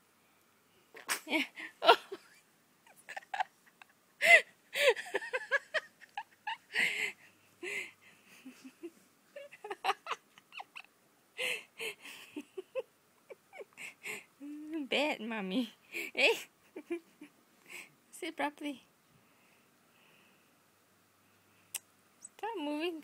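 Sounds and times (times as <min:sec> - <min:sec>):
woman laughing: 0:01.2 - 0:14.2, 0:16.2 - 0:17.3.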